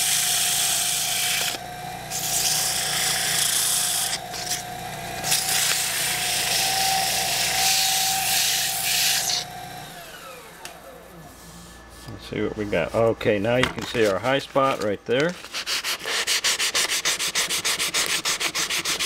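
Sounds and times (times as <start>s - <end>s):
lathe motor whine: 0.0s - 13.4s
sandpaper sanding hiss: 15.4s - 19.0s.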